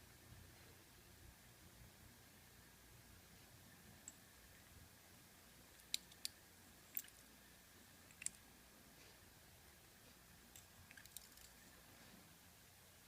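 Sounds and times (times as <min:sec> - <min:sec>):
small metal lock parts clicking: 0:10.6 - 0:11.6.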